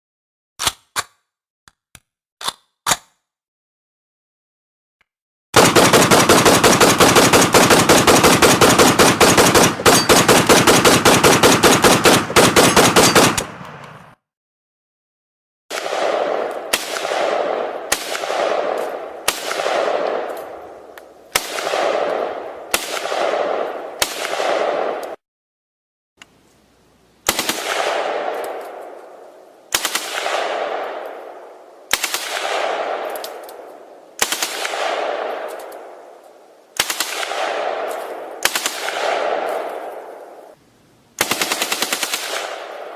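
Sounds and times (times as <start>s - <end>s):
rifle automatic burst: 5.6s - 13.9s, 27.3s - 28.4s, 29.7s - 30.8s, 36.8s - 37.6s, 41.2s - 42.9s
single gunshots with rolling echo: 5.6s - 14.1s, 15.7s - 25.2s, 27.2s - 36.2s, 36.8s - 40.6s, 41.2s - 42.9s.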